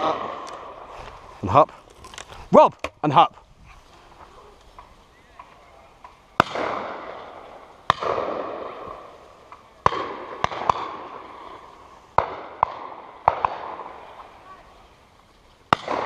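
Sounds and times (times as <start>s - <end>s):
shotgun reports echoing: 6.4s - 9.0s.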